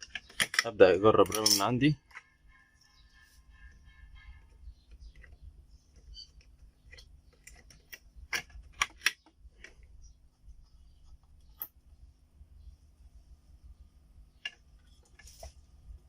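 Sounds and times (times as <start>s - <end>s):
slot latches snapping: 0.0s - 1.7s, 6.9s - 9.3s
plastic and metal clicks: 0.0s - 2.3s, 4.9s - 9.8s
low steady hum: 0.0s - 16.0s.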